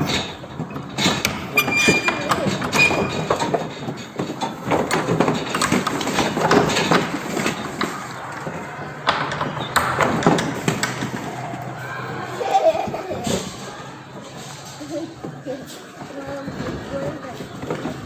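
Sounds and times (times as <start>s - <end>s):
irregular knocks and clatter: 0.0s - 18.0s
people talking in background: 11.3s - 18.0s.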